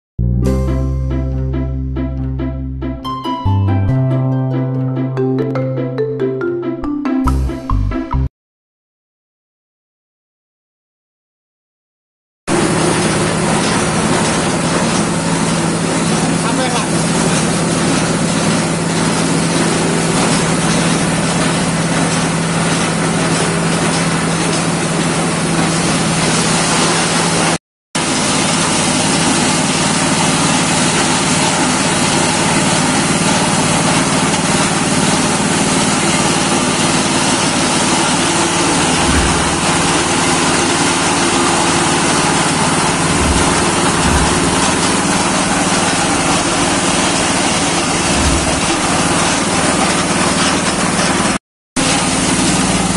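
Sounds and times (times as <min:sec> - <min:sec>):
feed crumbler machine droning: 0:12.5 - 0:52.9.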